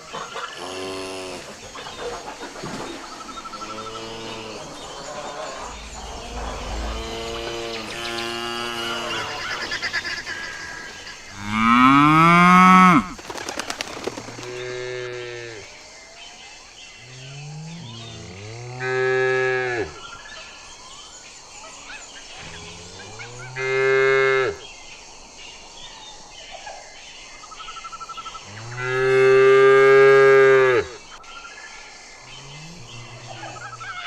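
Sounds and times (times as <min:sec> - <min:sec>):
faint chirping: 0:00.0 - 0:12.1, 0:30.9 - 0:34.0
cow mooing: 0:05.7 - 0:09.6, 0:11.3 - 0:13.2.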